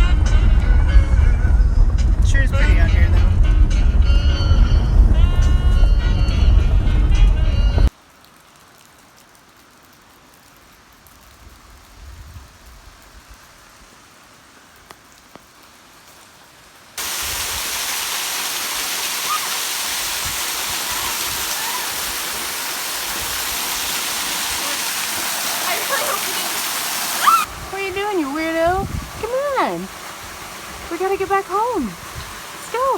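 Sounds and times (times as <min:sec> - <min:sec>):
low rumble: 0:00.0 - 0:07.9
waterfall rushing: 0:17.0 - 0:32.9.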